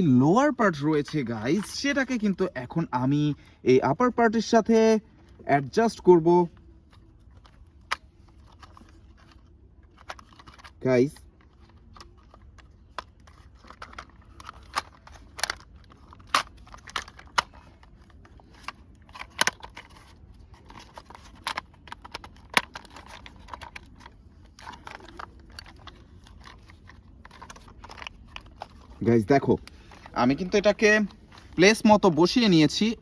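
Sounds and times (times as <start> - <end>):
plastic toy parts clicking: 11.6 - 29.0.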